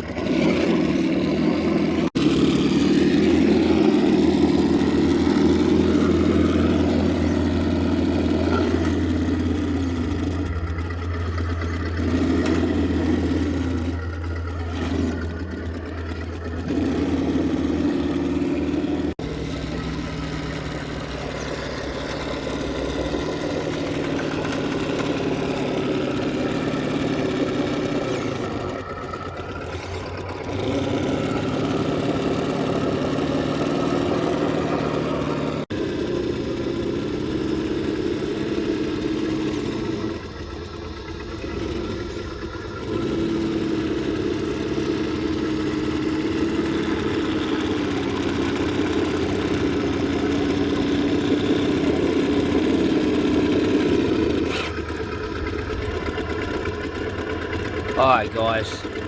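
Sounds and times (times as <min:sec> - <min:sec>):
electric motor and gears whirring: 0:00.0 - 0:59.0.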